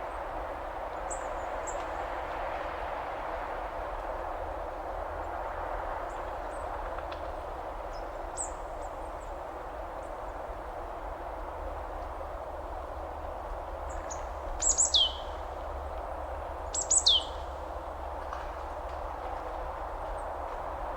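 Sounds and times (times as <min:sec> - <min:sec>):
bird calling: 0:14.6 - 0:15.2, 0:16.8 - 0:17.4.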